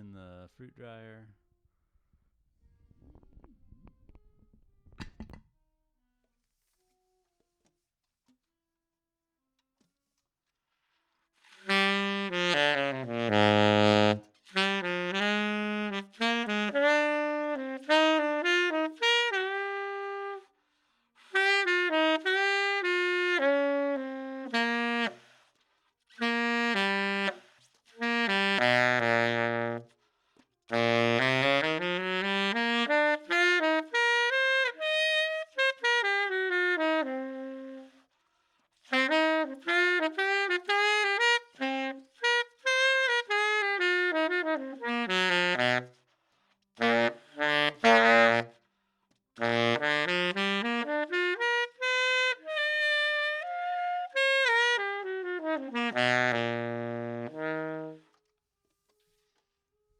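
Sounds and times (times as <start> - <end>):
tenor saxophone solo: 11.4 - 20.5, 21.2 - 25.5, 26.1 - 30.0, 30.7 - 38.1, 38.8 - 46.1, 46.8 - 48.6, 49.4 - 58.2.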